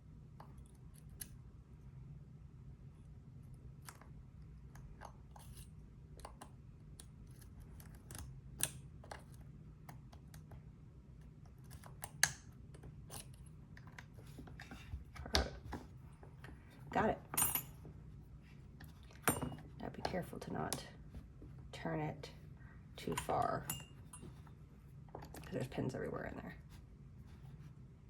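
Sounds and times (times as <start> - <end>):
low steady hum: 0.0 - 28.0
handling noise: 14.1 - 21.7.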